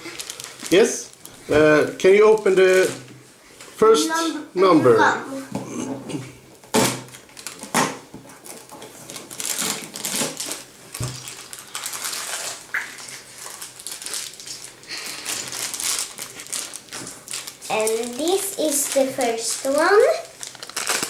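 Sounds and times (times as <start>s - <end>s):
cardboard rustling: 15.2s - 21.0s.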